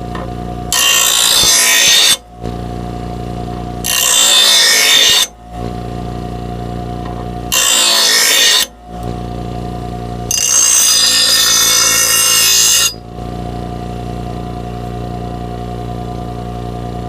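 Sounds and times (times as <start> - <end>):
electric grinder humming: 0.0 - 16.6
blade grinding on wheel: 0.1 - 2.8, 3.6 - 5.9, 7.1 - 9.3, 10.2 - 13.0.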